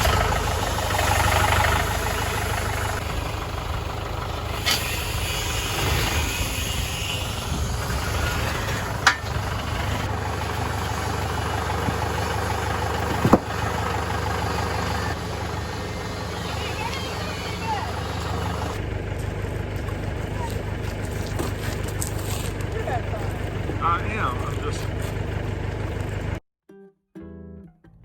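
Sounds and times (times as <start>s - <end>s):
tractor engine running: 0.0s - 26.4s
sharp knocks: 13.1s - 13.7s.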